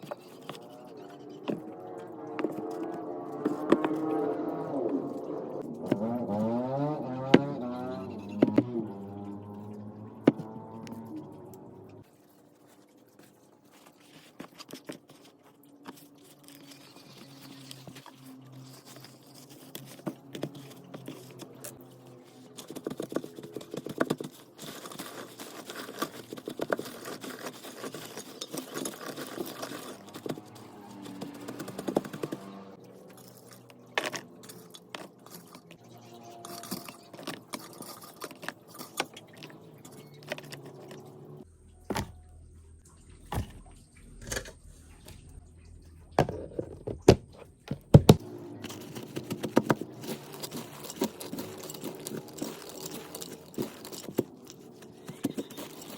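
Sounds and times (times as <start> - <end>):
kitchen items clicking and scraping: 0.0 - 42.2, 43.0 - 55.9.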